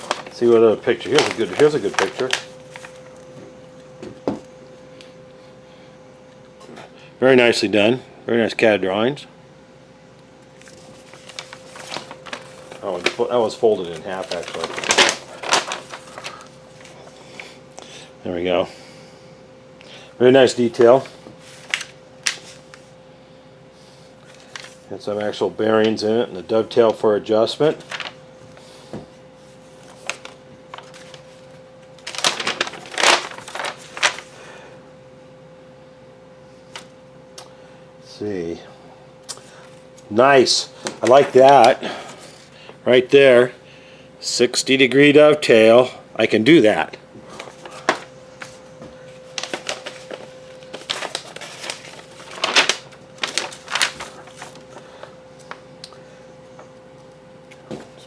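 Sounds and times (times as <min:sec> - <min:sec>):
paper rustling and crinkling: 0:00.0 - 0:03.3, 0:10.6 - 0:17.5, 0:20.6 - 0:22.9, 0:24.2 - 0:24.9, 0:27.6 - 0:34.4, 0:40.8 - 0:42.5, 0:47.2 - 0:55.6
faint steady hum: 0:00.0 - 0:58.0.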